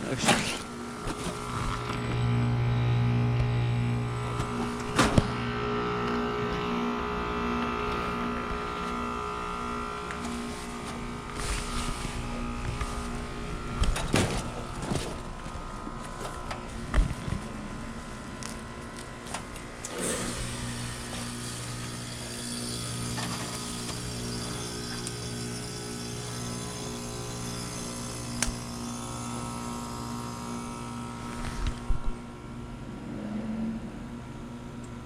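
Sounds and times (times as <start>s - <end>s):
heat pump humming: 0.0s - 35.0s
heat pump hissing: 6.8s - 31.8s.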